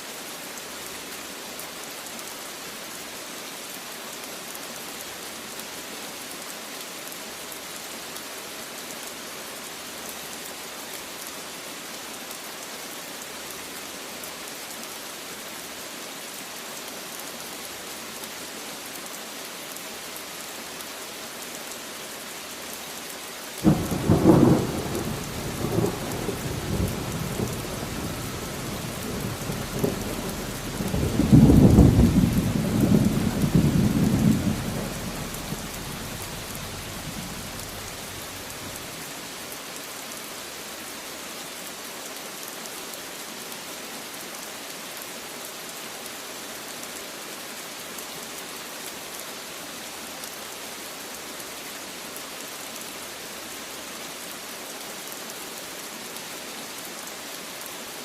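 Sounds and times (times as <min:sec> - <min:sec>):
heavy rain: 0:00.0 - 0:58.0
thunder rumbling: 0:23.6 - 0:38.8.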